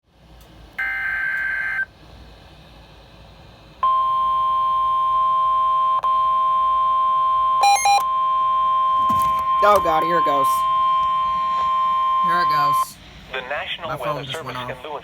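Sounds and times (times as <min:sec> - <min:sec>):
steady single-pitch attention tone: 0:03.8 - 0:13.0.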